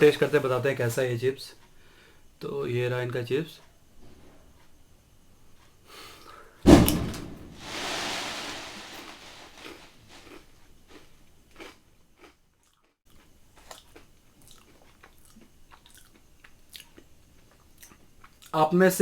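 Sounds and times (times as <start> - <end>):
person chewing crunchy chips: 9.6 - 18.6.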